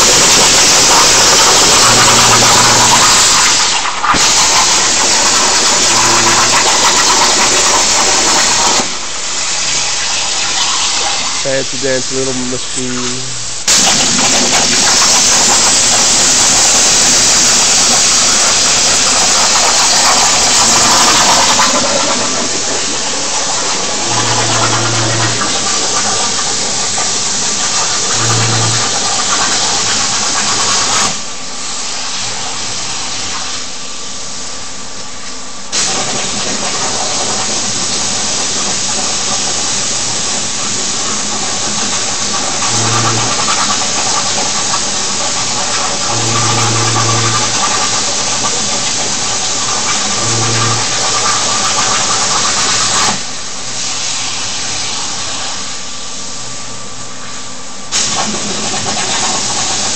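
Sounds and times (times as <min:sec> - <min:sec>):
plasma torch cutting hiss: 0:00.0 - 0:33.7, 0:35.7 - 0:56.2, 0:57.9 - 0:59.9
low hums: 0:23.9 - 0:25.9, 0:28.1 - 0:29.0, 0:50.1 - 0:51.1.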